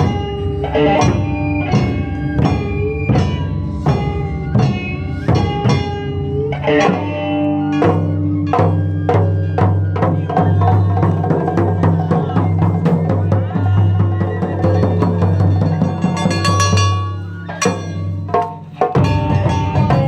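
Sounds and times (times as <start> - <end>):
drums struck in steady beat: 0.0 - 20.0
plucked string notes: 14.6 - 20.0.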